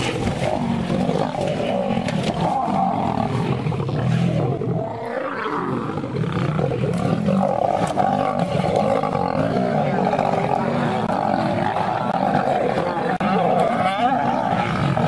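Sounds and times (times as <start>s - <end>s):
lions growling and roaring: 0.0s - 15.0s.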